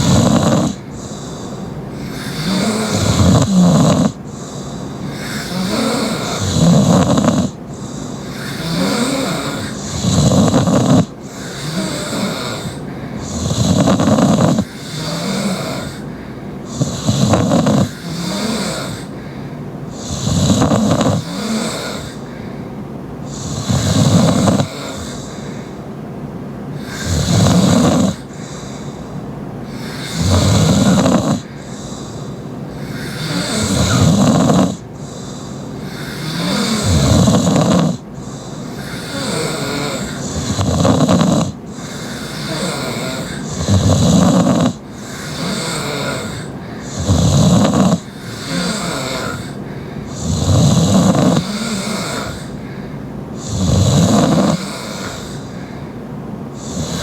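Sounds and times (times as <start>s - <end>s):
woman snoring loudly: 0.0s - 22.4s, 23.3s - 25.6s, 26.8s - 52.7s, 53.4s - 55.8s, 56.6s - 57.0s
quiet breathing: 0.0s - 57.0s.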